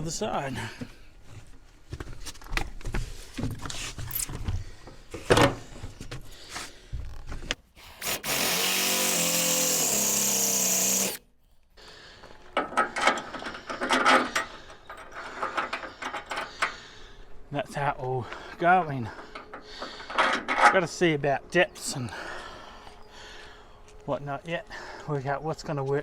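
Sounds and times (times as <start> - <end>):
electric drill running: 7.8 - 11.2
tools and metal parts clattering: 12.5 - 16.8, 19.0 - 21.0.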